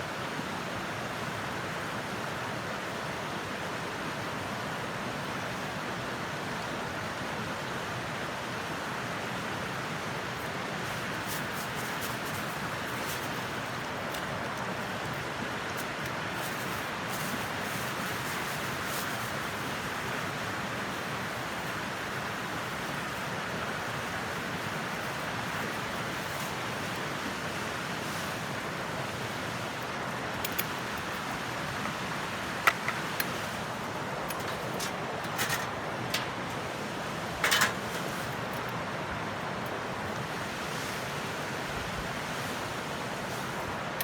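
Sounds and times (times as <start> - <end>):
wood fire hissing and crackling: 9.2 - 44.0.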